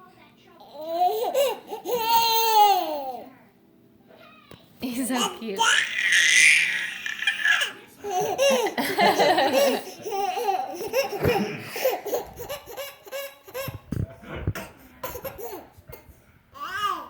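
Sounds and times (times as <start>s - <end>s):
baby laughing: 0.8s - 3.2s, 5.2s - 14.0s, 15.0s - 17.0s.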